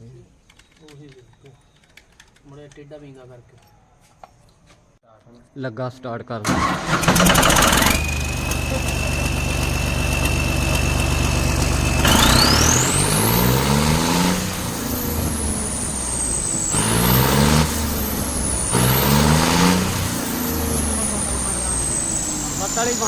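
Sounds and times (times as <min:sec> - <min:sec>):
diesel engine idling and revving: 0:06.5 - 0:23.0.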